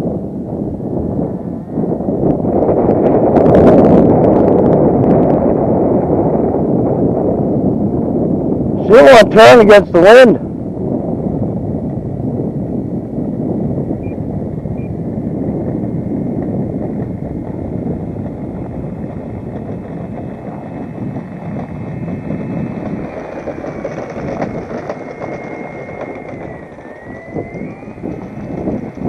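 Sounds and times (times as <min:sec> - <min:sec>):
wind buffeting microphone: 0:00.0 - 0:29.0
model plane motor whine: 0:11.7 - 0:29.0.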